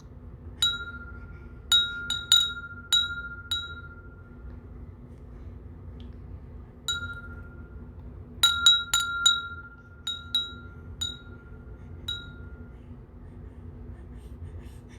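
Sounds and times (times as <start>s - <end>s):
small bell strikes: 0.6s - 4.4s, 6.9s - 11.5s.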